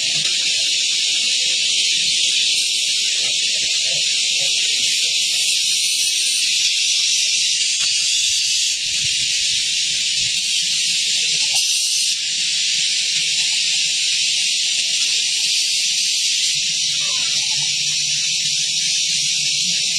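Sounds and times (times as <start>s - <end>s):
steady high hiss: 0.0s - 19.9s.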